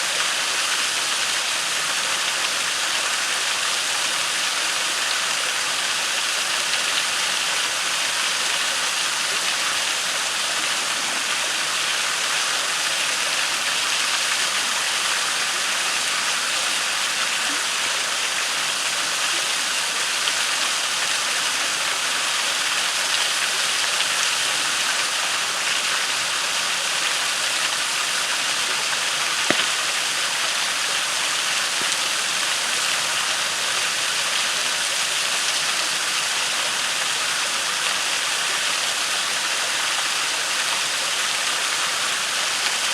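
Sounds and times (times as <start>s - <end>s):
waterfall rushing into pool: 0.0s - 42.9s
campfire popping: 29.3s - 30.4s.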